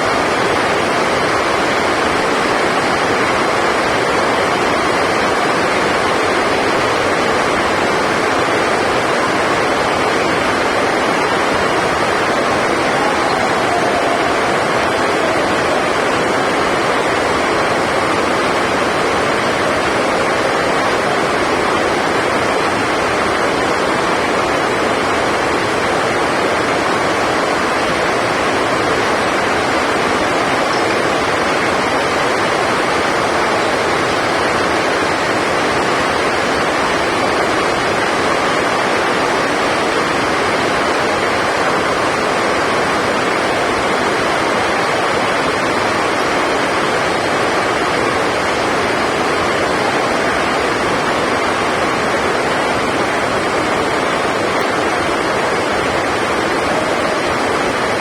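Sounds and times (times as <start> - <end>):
heavy rain on a roof: 0.0 - 58.0.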